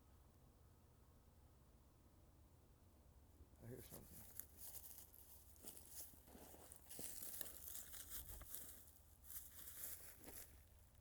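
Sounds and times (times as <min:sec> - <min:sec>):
rustling and crackling: 0:03.8 - 0:10.7.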